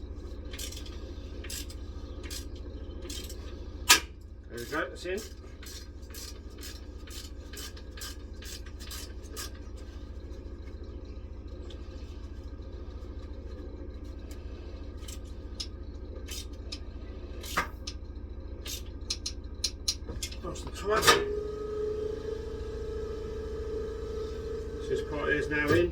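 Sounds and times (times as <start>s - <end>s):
steady low hum: 0.0s - 25.9s.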